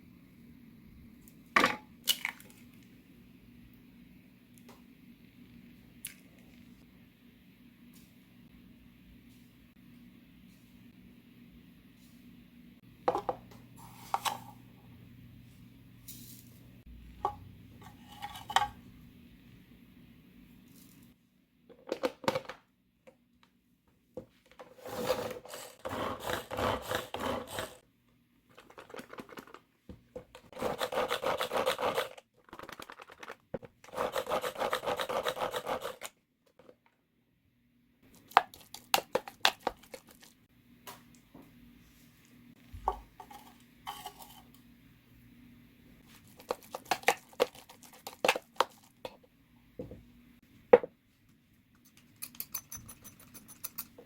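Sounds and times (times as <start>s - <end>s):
carrot grating on metal grater: 24.8s - 27.8s, 30.6s - 32.2s, 33.9s - 36.1s.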